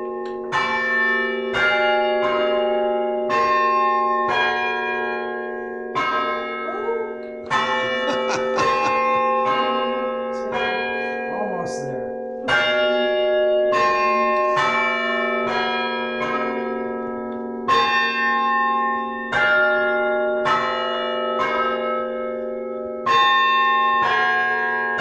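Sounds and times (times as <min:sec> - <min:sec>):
church bells ringing: 0:00.0 - 0:25.0.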